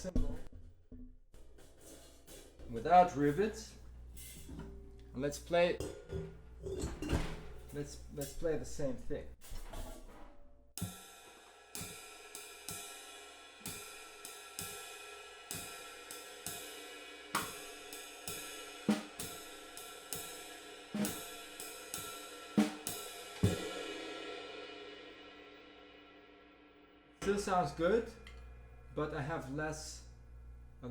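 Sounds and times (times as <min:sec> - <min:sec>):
cymbal struck with drumstick: 0:10.8 - 0:26.6.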